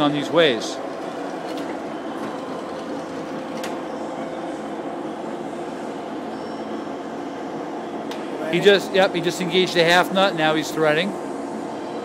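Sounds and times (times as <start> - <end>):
lathe running with geared hum: 0.0 - 4.3.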